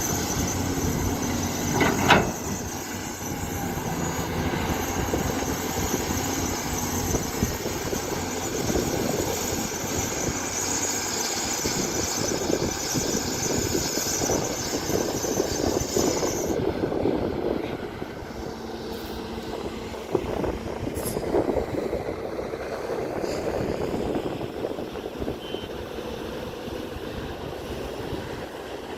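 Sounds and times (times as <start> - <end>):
excavator digging clatter: 0.0 - 16.6
diesel engine running: 0.0 - 28.9.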